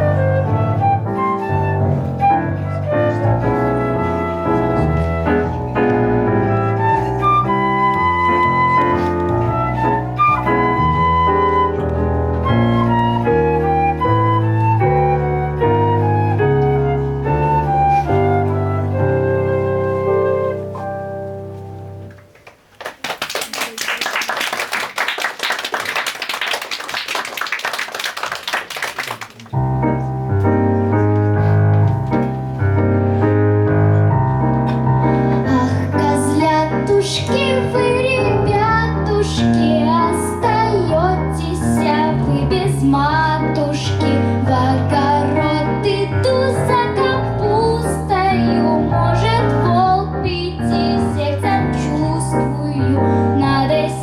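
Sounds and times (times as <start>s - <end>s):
audience applauding: 22.3s - 29.7s.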